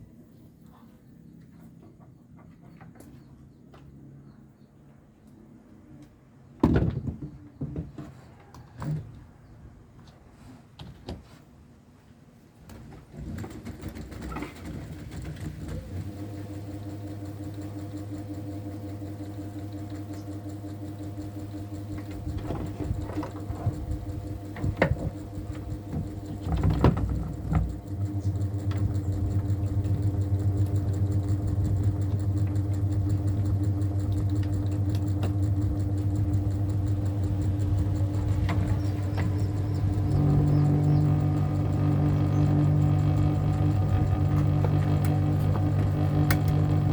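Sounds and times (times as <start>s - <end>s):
ceiling fan motor humming: 13.8s - 46.9s.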